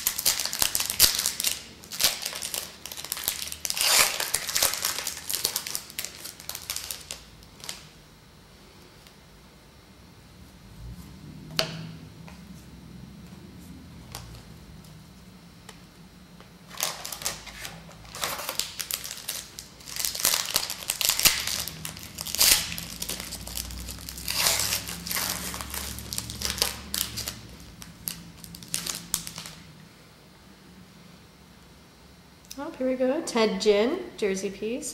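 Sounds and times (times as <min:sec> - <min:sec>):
foil wrapper crinkling: 0:00.0 - 0:07.9, 0:16.7 - 0:29.7.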